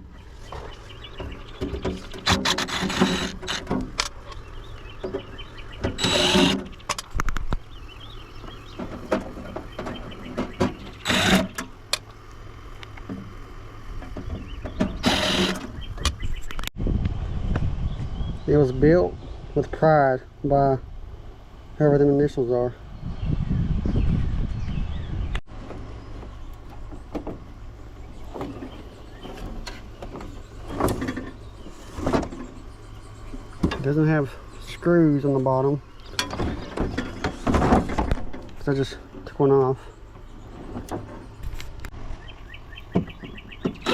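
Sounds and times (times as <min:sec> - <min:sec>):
clicks and clatter of parts: 0:01.2 - 0:07.6
small electric motor whirring: 0:02.2 - 0:03.7, 0:06.0 - 0:06.7, 0:11.0 - 0:11.7, 0:15.0 - 0:15.8.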